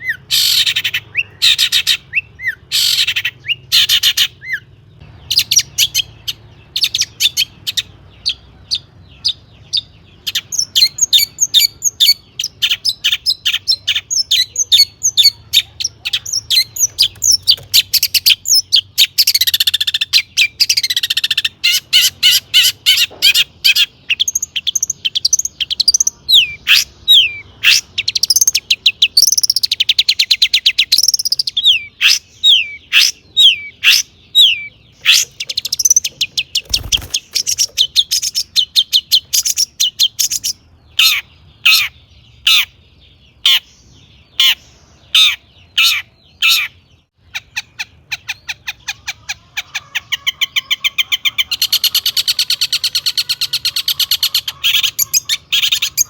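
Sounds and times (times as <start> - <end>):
bird singing high chattering notes: 0.0 - 56.0.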